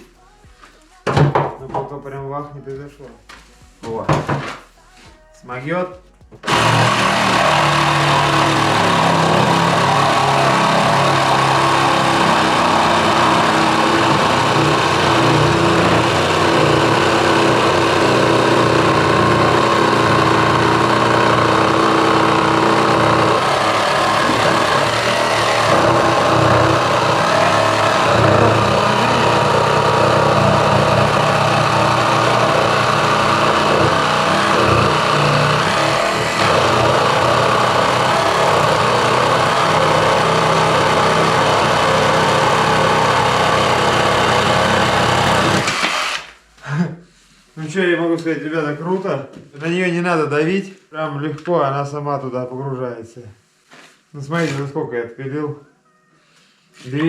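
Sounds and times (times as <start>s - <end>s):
reciprocating saw cutting timber: 6.4s - 46.4s.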